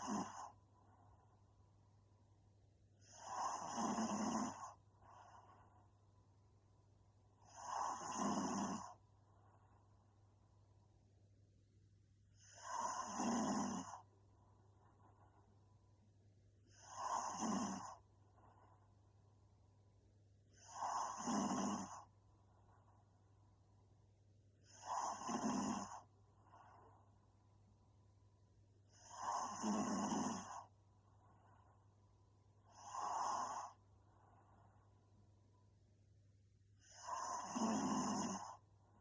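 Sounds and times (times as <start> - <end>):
woman snoring: 0.0 - 0.6, 3.0 - 5.7, 7.4 - 9.0, 12.4 - 14.1, 16.7 - 18.0, 20.5 - 22.1, 24.6 - 26.9, 28.9 - 30.7, 32.7 - 33.8, 36.8 - 38.6
quiet breathing: 0.0 - 39.0.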